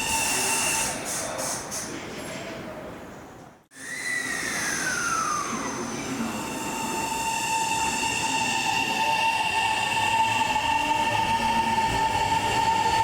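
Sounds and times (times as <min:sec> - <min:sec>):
train wheels squealing: 0:00.0 - 0:01.9, 0:03.8 - 0:13.0
train rumbling: 0:04.3 - 0:13.0.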